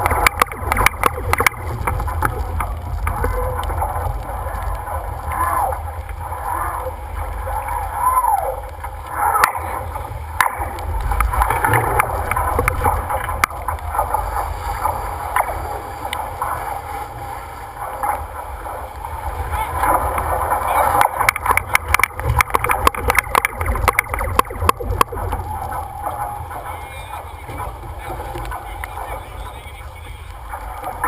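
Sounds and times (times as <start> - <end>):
water rushing along hull: 0.0 - 31.0
wind buffeting microphone: 0.0 - 31.0.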